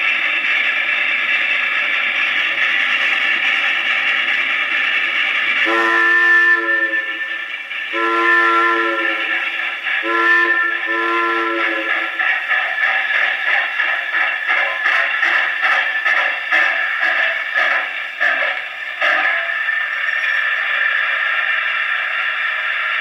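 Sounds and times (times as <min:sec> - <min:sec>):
train running noise: 0:00.0 - 0:23.0
chime train whistle: 0:05.6 - 0:12.2.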